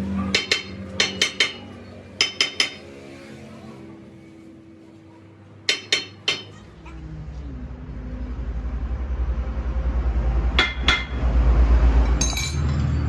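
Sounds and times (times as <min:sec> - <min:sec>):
low pulsing machine drone: 0:06.7 - 0:13.0.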